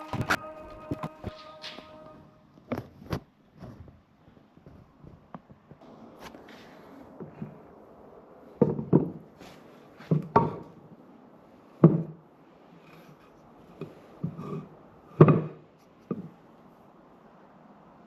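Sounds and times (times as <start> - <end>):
wooden blocks knocking: 8.6 - 9.3, 10.1 - 10.7, 11.8 - 12.2, 15.2 - 16.3.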